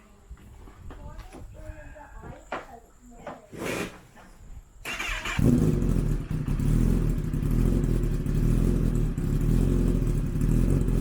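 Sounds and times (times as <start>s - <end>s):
motorcycle engine idling: 4.9s - 11.0s.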